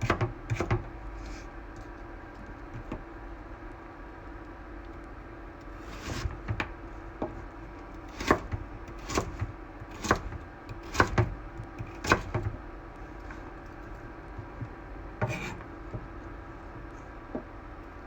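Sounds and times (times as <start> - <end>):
steady low hum: 0.0 - 18.0
knife chopping on cutting board: 8.1 - 12.6, 15.2 - 16.1.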